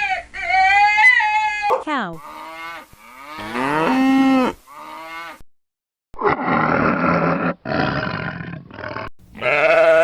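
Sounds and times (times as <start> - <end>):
cow mooing: 2.2 - 5.4, 9.4 - 10.0
rough animal calls: 6.2 - 10.0.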